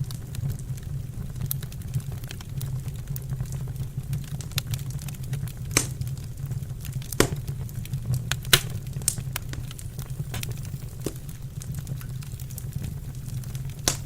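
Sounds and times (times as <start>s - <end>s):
wood fire crackling and popping: 0.0s - 14.0s
steady low hum: 5.8s - 14.0s.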